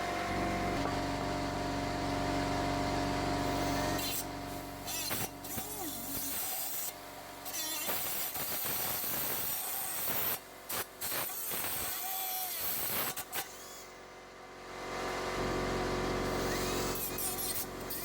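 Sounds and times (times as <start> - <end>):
rotary grinding tool running: 3.3 - 14.1, 14.8 - 18.0.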